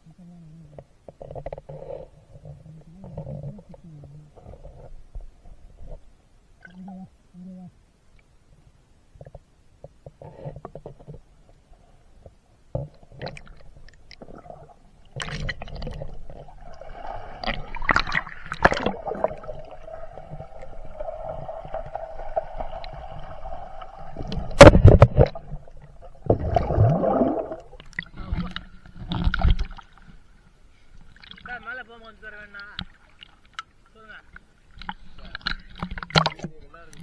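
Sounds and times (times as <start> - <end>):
muffled underwater gurgling: 14.2 - 29.6
loud thump: 24.4 - 25.4.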